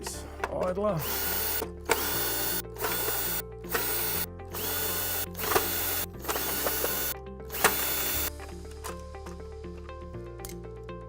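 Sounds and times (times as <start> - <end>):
background music: 0.0 - 11.0
cordless screwdriver running: 1.0 - 8.3.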